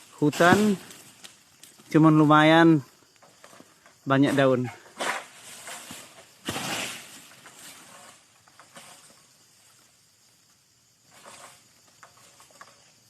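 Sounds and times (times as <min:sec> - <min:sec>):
rustling in leaves: 0:00.0 - 0:02.1, 0:04.4 - 0:10.2.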